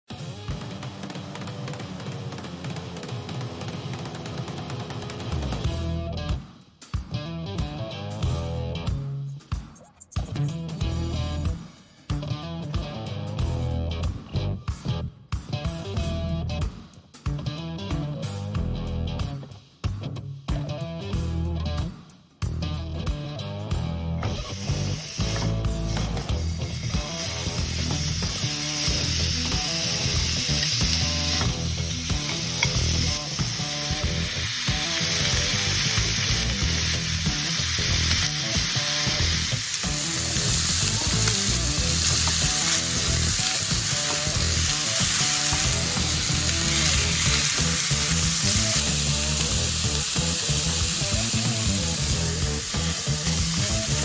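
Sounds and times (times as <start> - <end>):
background music: 0.1 - 54.0
food sizzling in a skillet: 24.2 - 54.0.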